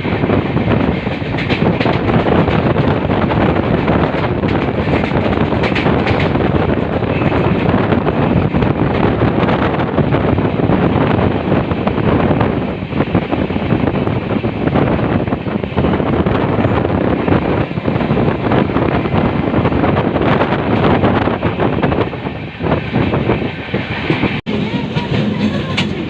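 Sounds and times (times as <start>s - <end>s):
train wheels on rails: 0.0s - 26.0s
clicks and rattles: 4.4s - 7.0s.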